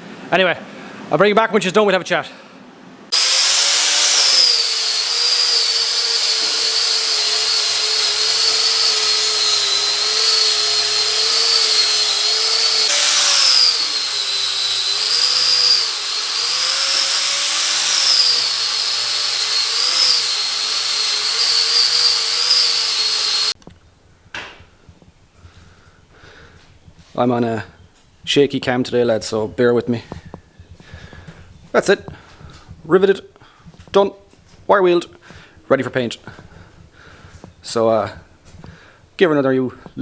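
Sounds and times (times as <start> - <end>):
wire wheel grinding metal: 3.2 - 23.6.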